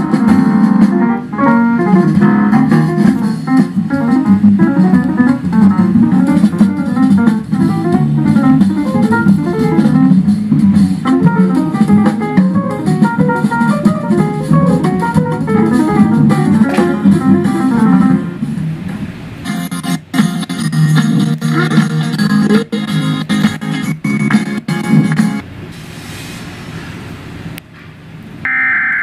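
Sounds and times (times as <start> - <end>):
plucked guitar notes: 0.0 - 18.8
light drums: 0.0 - 19.1
low accompaniment: 0.0 - 19.7.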